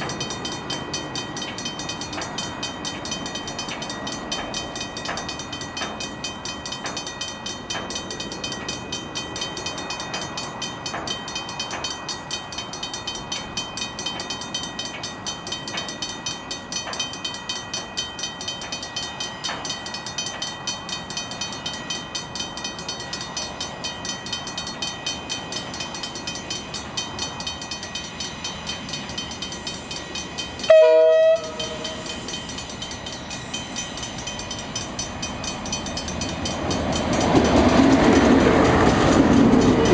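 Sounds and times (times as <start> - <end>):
diesel train rolling past: 0.0 - 39.9
wheels clicking over rails: 0.0 - 39.9
train horn blast: 30.7 - 32.0.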